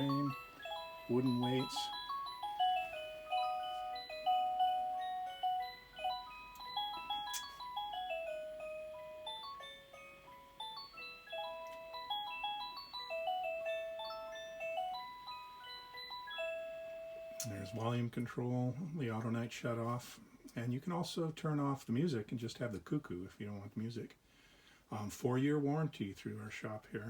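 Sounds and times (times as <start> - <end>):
electronic clock melody: 0.0 - 17.9.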